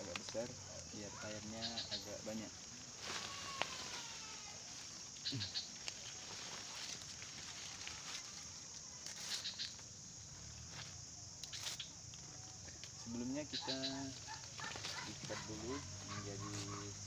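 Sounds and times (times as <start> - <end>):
faint animal calls: 0.9 - 5.9, 13.0 - 17.0.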